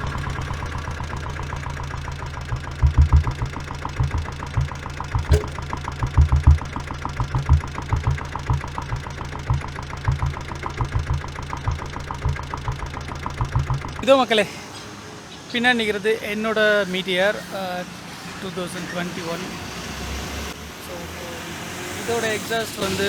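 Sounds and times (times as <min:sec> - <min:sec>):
diesel engine idling: 0:00.0 - 0:23.0.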